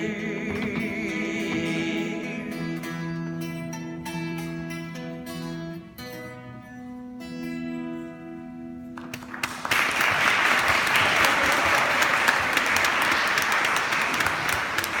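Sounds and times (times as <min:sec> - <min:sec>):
acoustic guitar chord ringing: 0:00.0 - 0:09.0
audience applauding: 0:09.0 - 0:15.0.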